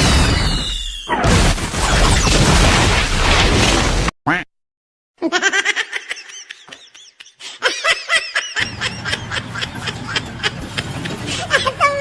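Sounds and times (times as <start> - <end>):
person laughing high-pitched: 5.2 - 12.0.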